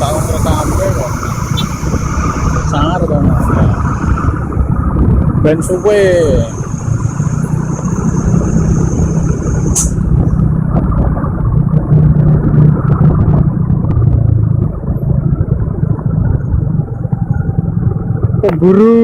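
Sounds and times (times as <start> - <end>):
thin high whine: 0.0 - 4.9
heavy diesel engine rumbling: 0.0 - 19.0.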